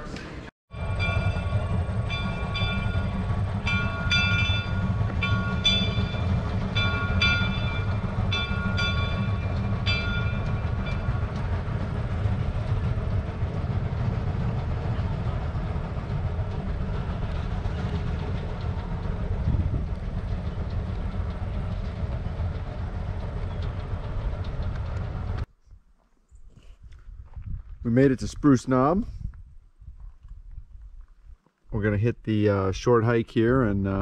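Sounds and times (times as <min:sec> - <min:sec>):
low train rumble: 0:00.0 - 0:25.6, 0:31.7 - 0:34.0
locomotive bell ringing: 0:00.7 - 0:11.8.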